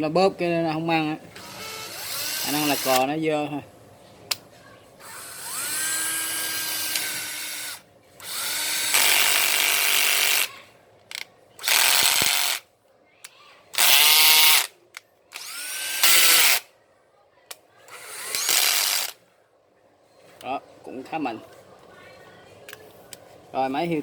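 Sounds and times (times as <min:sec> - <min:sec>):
cordless drill whining: 0:01.3 - 0:03.1, 0:05.0 - 0:10.5, 0:15.4 - 0:16.6, 0:17.9 - 0:19.2.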